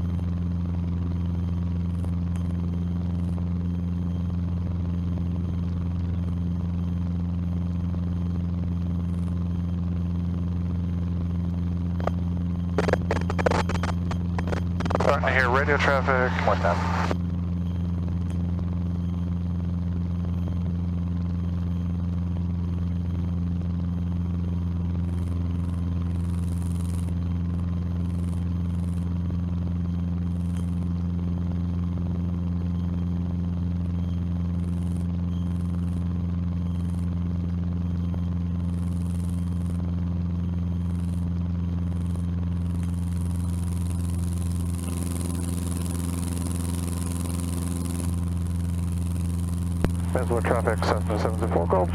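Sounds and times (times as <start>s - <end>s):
airplane engine and propeller droning: 0.0s - 21.9s, 42.6s - 51.9s.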